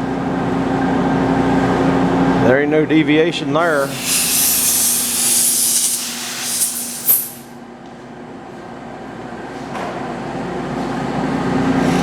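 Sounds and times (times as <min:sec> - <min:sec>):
loud hiss: 0:03.6 - 0:07.5
metal lathe humming: 0:03.6 - 0:07.5.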